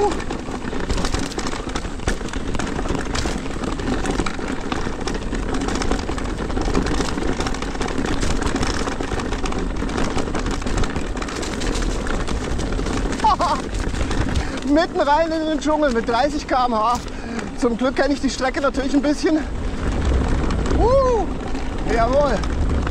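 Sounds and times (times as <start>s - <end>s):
bike tyres rolling on rough trail: 0.0s - 22.9s
knocks and rustles from bike: 0.0s - 22.9s
wind on microphone: 19.4s - 22.9s.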